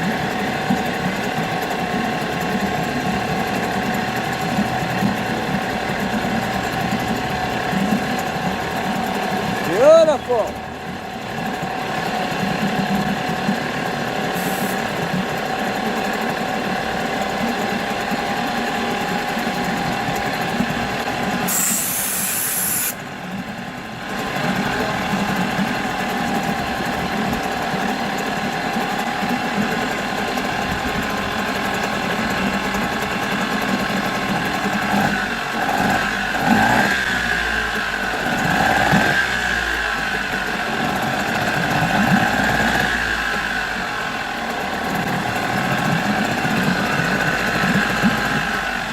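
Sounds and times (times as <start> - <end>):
outboard motor running: 0.0 - 48.9
short burst of hiss: 21.5 - 23.0.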